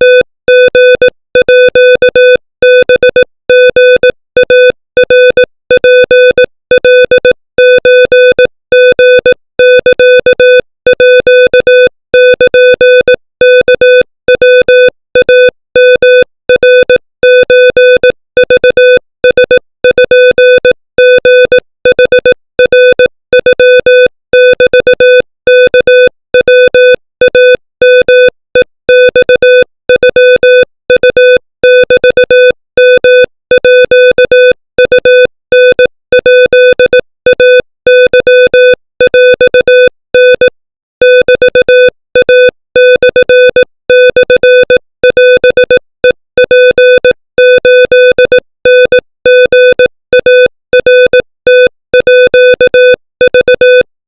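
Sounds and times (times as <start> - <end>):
morse code beeps: 0.0 - 53.9.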